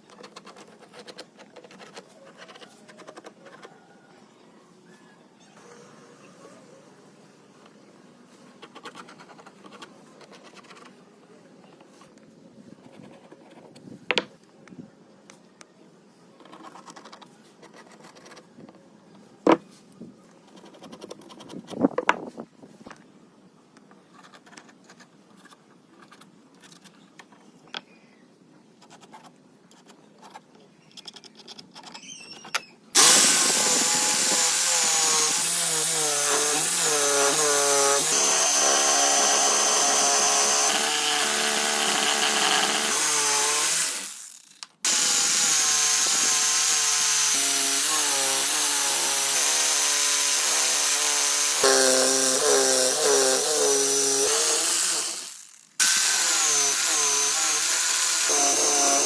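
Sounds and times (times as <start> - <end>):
electric power tool running: 33.0 - 59.0.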